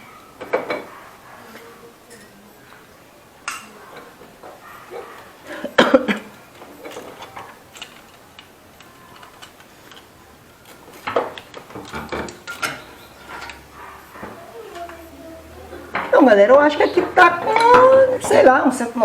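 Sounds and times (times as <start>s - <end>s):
metal tools clinking and knocking: 2.1s - 15.1s.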